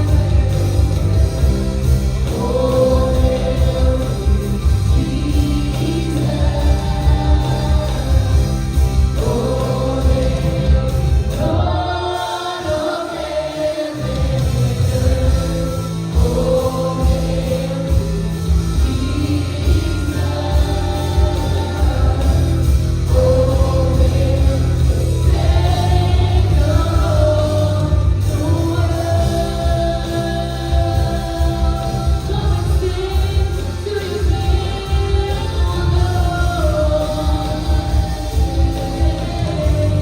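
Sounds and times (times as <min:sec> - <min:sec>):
group of singers: 0:00.0 - 0:40.0
live worship band playing: 0:00.0 - 0:40.0.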